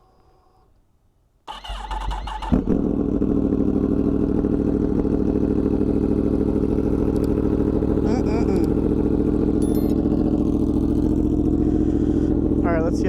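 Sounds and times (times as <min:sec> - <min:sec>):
motorcycle starter cranking: 0:01.5 - 0:02.8
motorcycle engine idling: 0:02.2 - 0:13.0.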